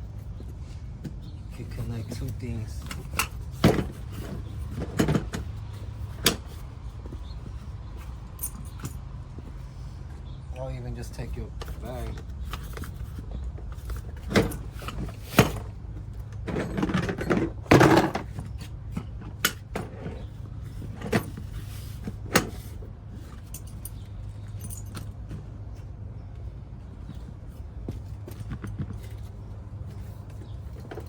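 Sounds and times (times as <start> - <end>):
rattling clatter: 1.1 - 9.0, 11.1 - 25.4.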